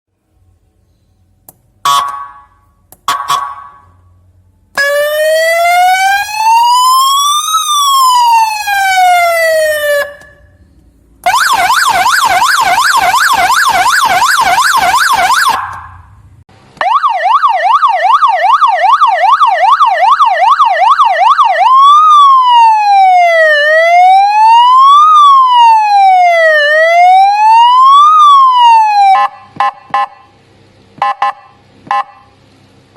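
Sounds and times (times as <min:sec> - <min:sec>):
electronic siren wailing and yelping: 0:04.8 - 0:10.5, 0:11.2 - 0:16.0, 0:16.8 - 0:30.3
short choppy beeps: 0:29.2 - 0:30.3, 0:31.0 - 0:32.3.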